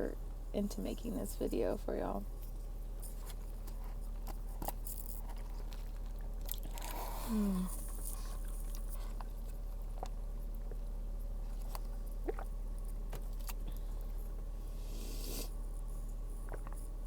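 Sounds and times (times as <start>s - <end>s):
chewing and mouth clicks: 3.6s - 10.9s, 11.5s - 14.5s, 16.4s - 17.0s
short hissing noise: 14.8s - 15.6s.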